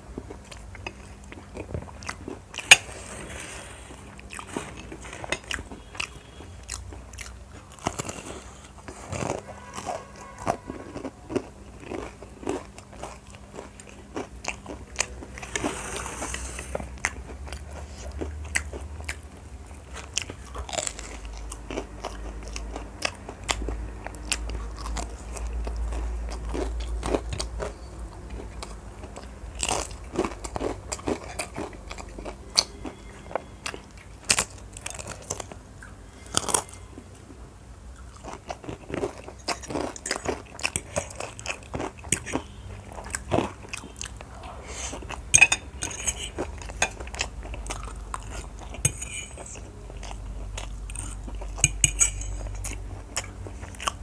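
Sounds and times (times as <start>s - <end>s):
person chewing crunchy food: 0.0s - 54.0s.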